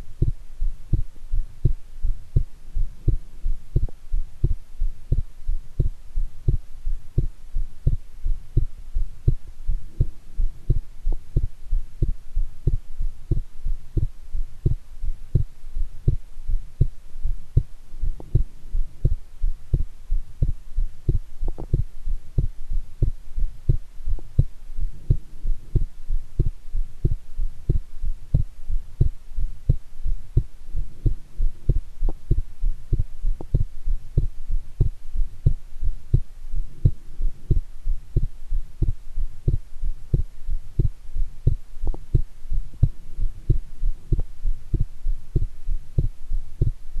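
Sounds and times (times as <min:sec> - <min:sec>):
heartbeat thumps: 0:00.0 - 0:47.0.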